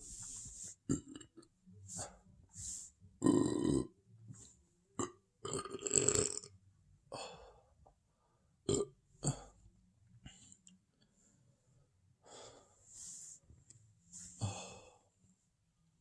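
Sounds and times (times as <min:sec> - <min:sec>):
person burping: 0:00.9 - 0:01.4, 0:03.2 - 0:03.9, 0:05.0 - 0:06.5, 0:08.7 - 0:09.5.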